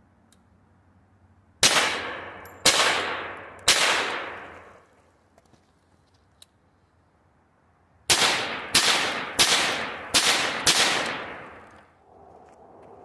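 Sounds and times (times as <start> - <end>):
echoing gunshots: 1.6 - 4.8, 8.1 - 11.8.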